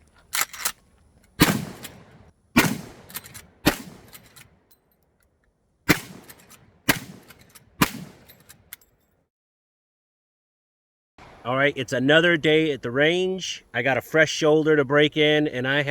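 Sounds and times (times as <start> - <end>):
rifle shots with echo: 1.4 - 4.5, 5.9 - 8.7.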